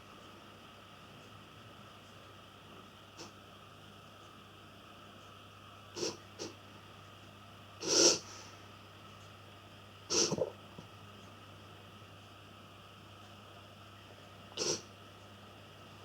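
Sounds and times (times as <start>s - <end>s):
pet reverse sneezing: 6.0s - 6.5s, 7.8s - 8.5s, 10.1s - 10.5s, 14.6s - 14.9s.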